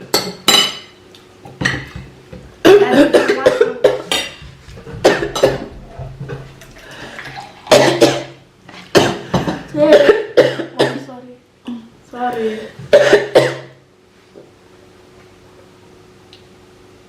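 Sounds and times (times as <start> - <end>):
dishes and cutlery clinking: 0.0 - 9.7
person coughing hard: 2.6 - 5.9, 7.7 - 11.2, 12.9 - 13.8.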